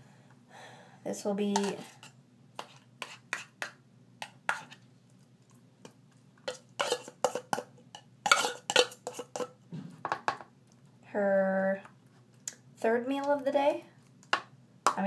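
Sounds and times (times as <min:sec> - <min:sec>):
spoon scraping a container: 0:01.5 - 0:04.8, 0:06.4 - 0:09.6.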